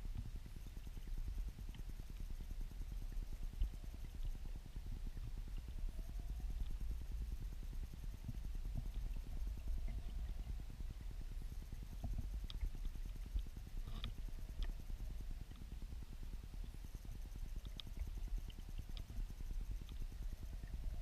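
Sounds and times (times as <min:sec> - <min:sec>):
faint clicks: 0:12.0 - 0:15.7, 0:16.6 - 0:21.0.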